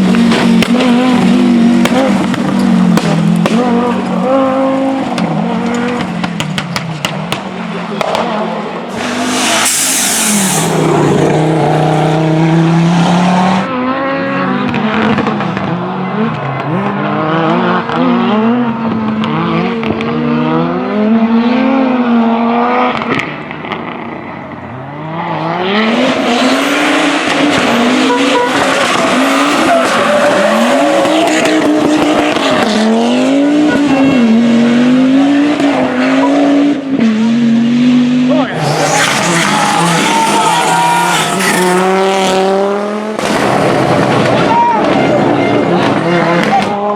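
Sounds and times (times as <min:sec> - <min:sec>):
rally car engines revving: 0:00.0 - 0:46.9
strong hiss: 0:08.9 - 0:11.0.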